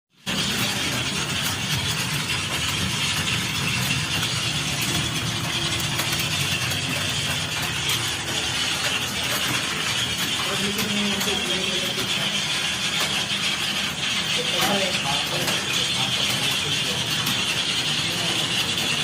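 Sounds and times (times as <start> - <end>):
mechanical hum with hiss: 0.2 - 19.0.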